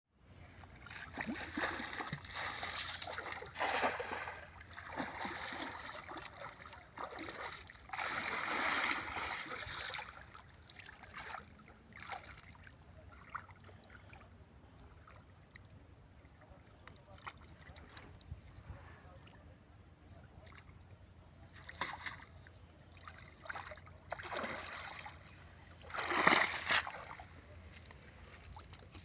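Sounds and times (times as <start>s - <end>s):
water splashing and sloshing: 0.5s - 15.8s, 21.6s - 29.0s.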